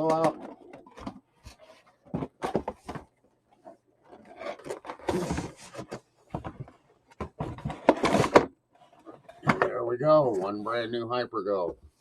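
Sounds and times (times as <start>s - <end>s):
cardboard scraping: 3.6s - 10.6s.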